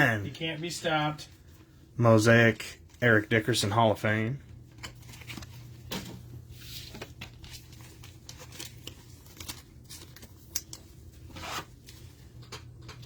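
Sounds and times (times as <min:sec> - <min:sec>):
plastic wrappers crinkling: 0:04.5 - 0:13.0.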